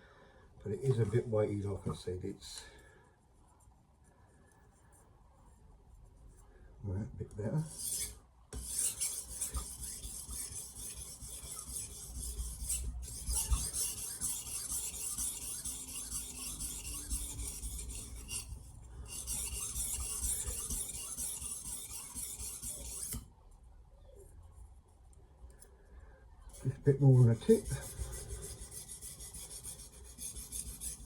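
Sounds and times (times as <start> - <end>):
knife scraping on sharpening plate: 7.7 - 23.2.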